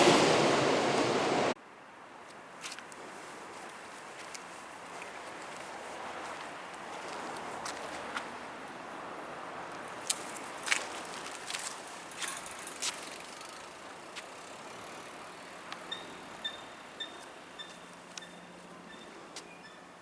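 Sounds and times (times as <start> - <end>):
crossing warning bell ringing: 15.8 - 19.8.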